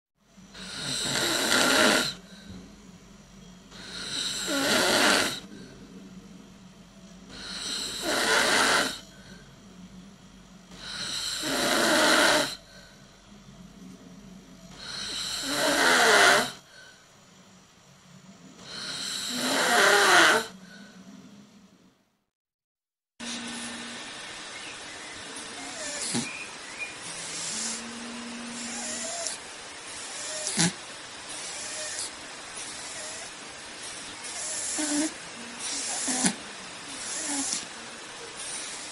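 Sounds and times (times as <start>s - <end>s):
person snoring: 0.5s - 2.5s, 3.7s - 5.9s, 7.3s - 9.4s, 10.7s - 12.8s, 14.7s - 16.8s, 18.6s - 21.0s, 23.2s - 24.1s, 27.0s - 29.4s, 30.0s - 32.1s, 34.0s - 37.8s.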